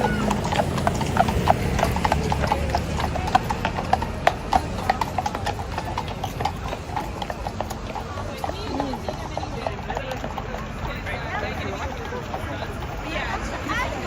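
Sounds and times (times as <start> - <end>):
horse hooves clip-clopping: 0.0 - 14.0.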